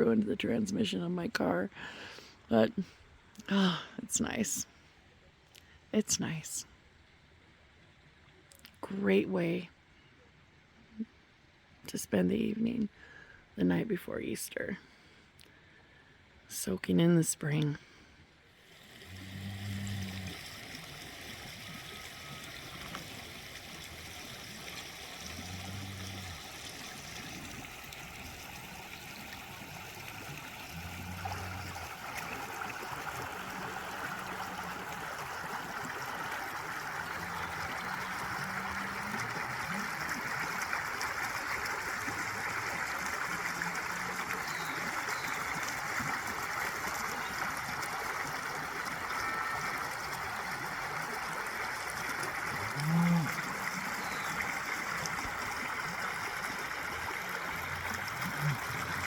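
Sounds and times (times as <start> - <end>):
stream water rushing: 18.6 - 59.0.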